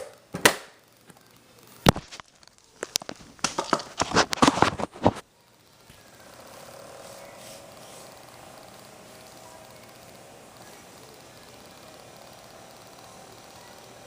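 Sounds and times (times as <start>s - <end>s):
plastic crackling: 1.0s - 5.2s.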